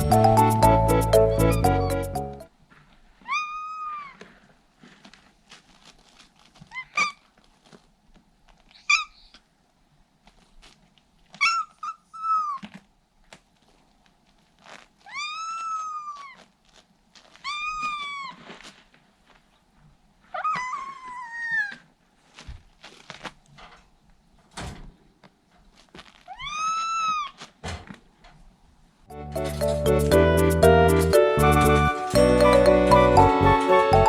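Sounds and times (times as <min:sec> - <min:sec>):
kitten meowing: 0:26.3 - 0:27.3.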